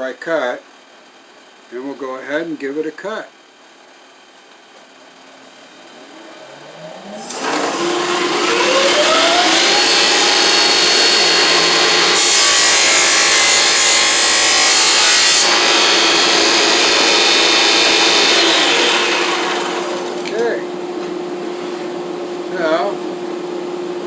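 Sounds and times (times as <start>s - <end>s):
table saw motor running: 5.6s - 20.6s
saw blade cutting wood: 7.0s - 20.5s.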